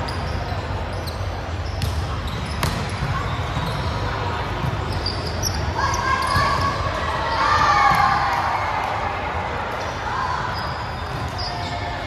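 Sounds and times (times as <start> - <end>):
players' voices: 0.0 - 12.0
volleyball bouncing on court: 1.6 - 6.8.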